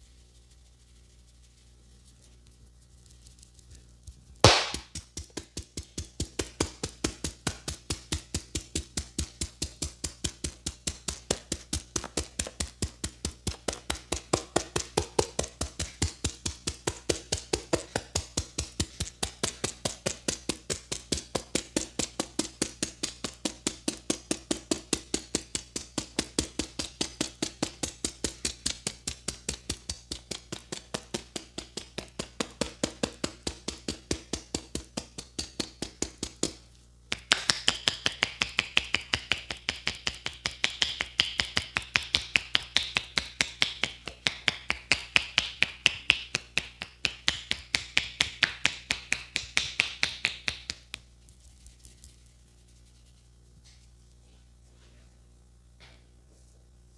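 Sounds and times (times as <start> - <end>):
hands tapping and slapping: 4.4 - 51.1.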